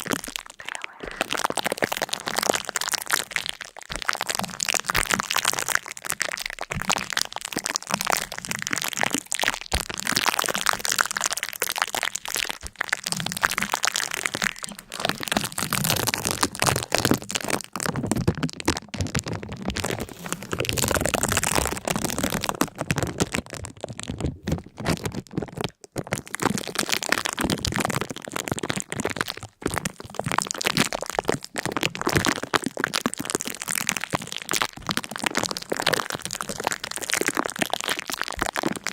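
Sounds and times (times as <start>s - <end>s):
cracking and crunching: 0.0s - 38.9s.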